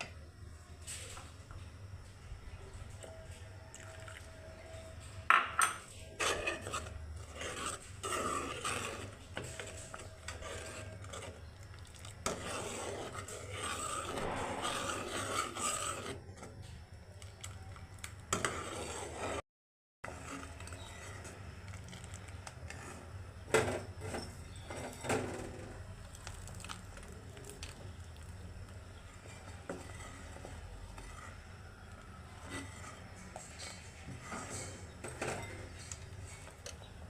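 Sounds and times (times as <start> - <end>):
utensils scraping cookware: 5.5 - 16.6, 18.3 - 19.4, 20.0 - 21.4, 22.6 - 25.8, 29.0 - 37.0.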